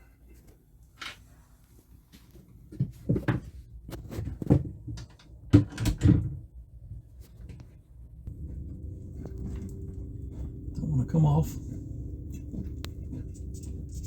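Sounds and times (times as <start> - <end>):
knocks and clunks in wooden cupboard: 4.2 - 6.4.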